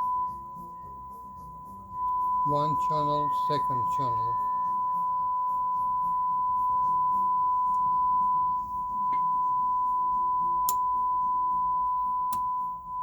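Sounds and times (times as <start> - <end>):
sine test tone: 0.0 - 13.0.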